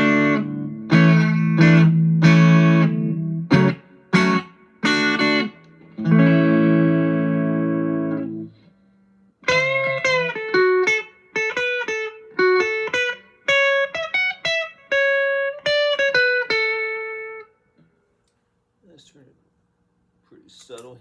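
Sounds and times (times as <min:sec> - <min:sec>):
electric guitar chord ringing: 0:00.0 - 0:08.6
electric guitar single-note melody: 0:00.0 - 0:08.7, 0:09.4 - 0:17.7.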